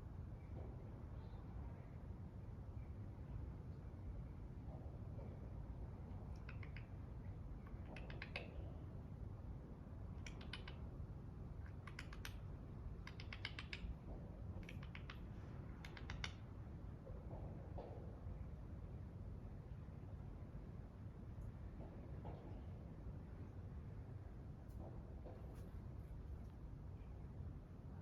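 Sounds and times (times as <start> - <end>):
low steady hum: 0.0 - 28.0.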